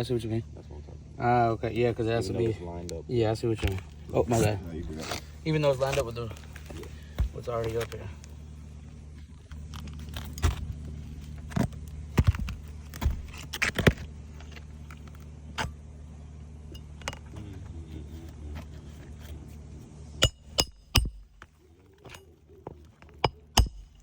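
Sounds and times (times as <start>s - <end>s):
low hum: 0.0s - 24.0s
sharp knocks: 20.2s - 21.4s, 23.2s - 24.0s.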